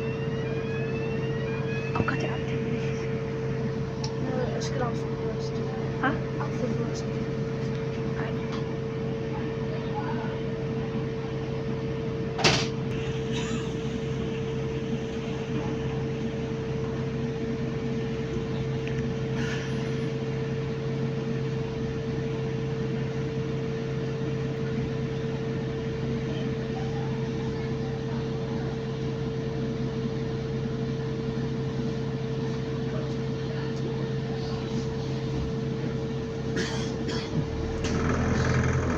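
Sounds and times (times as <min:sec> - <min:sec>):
constant whine: 0:00.0 - 0:09.8, 0:12.3 - 0:20.6, 0:35.1 - 0:38.9
bus cabin running hum: 0:00.0 - 0:38.9.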